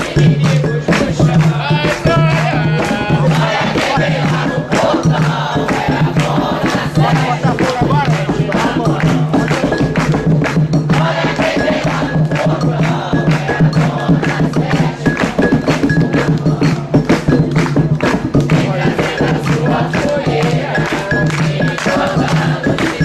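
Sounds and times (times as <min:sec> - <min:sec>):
group of voices chanting: 0:00.0 - 0:17.3, 0:18.4 - 0:23.0
hand drum beats: 0:00.0 - 0:23.0.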